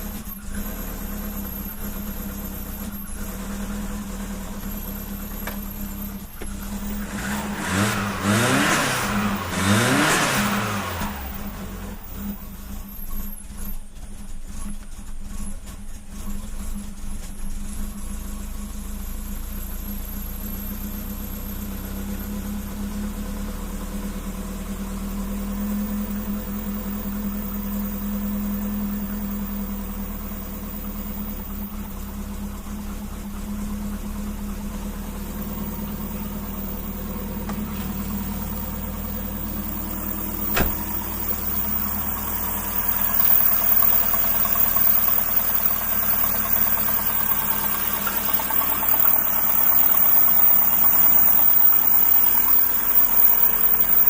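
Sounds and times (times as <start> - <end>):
car engine idling rough: 0.0 - 54.0
sharp click: 40.4 - 41.0.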